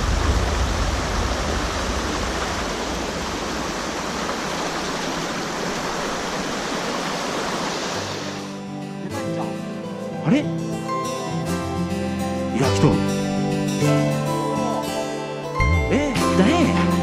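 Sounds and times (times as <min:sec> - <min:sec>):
mountain stream flowing: 0:00.0 - 0:08.8.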